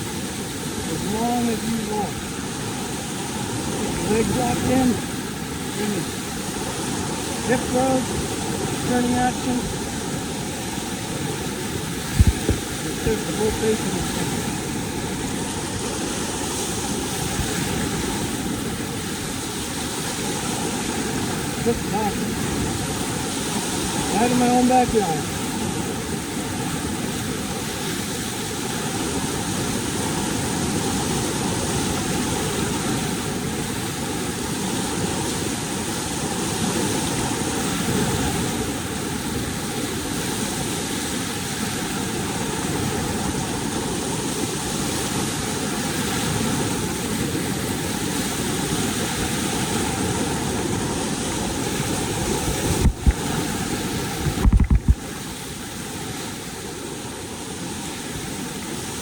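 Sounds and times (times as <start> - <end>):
whitewater rushing roar: 0.0 - 59.0
low bumps: 54.2 - 55.0.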